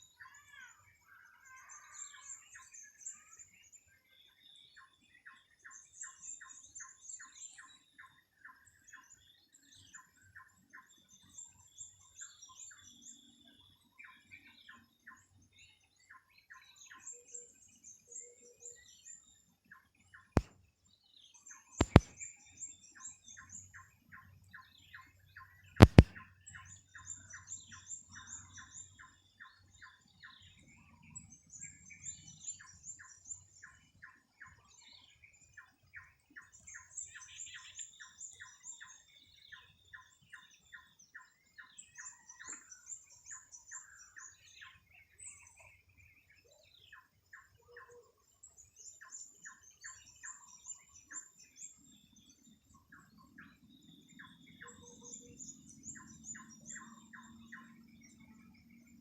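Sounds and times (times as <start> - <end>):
birds chirping: 21.8 - 22.1, 25.8 - 26.1
sharp clicks: 21.8 - 22.1, 25.8 - 26.1.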